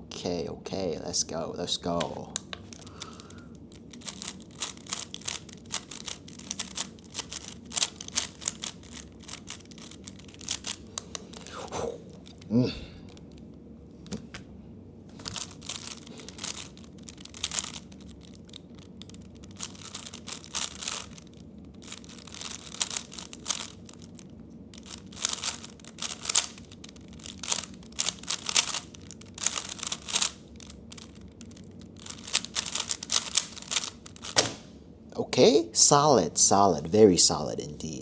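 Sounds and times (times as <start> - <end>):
puzzle cube clicking: 2.0 - 11.5, 15.3 - 24.1, 24.8 - 34.7.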